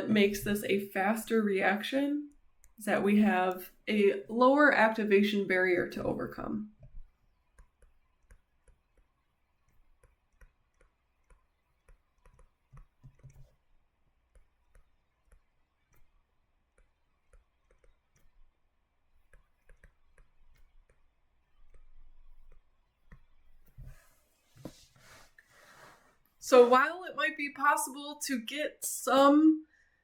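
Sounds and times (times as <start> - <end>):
faint irregular clicking: 2.3 - 2.8, 6.7 - 24.0.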